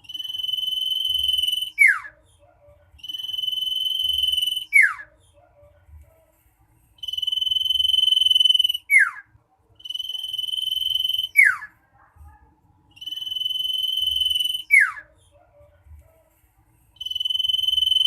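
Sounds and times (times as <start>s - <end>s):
bird singing whistles: 0.0s - 2.2s, 3.0s - 5.1s, 7.0s - 9.2s, 9.8s - 11.7s, 12.9s - 15.1s, 17.0s - 18.0s.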